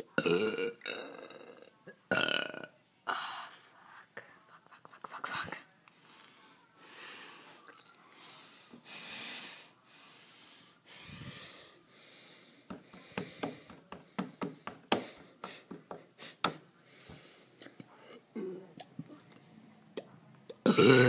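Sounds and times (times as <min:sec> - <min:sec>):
girl breathing noisily: 0:06.0 - 0:17.6
mouth and throat clicks: 0:18.7 - 0:19.2.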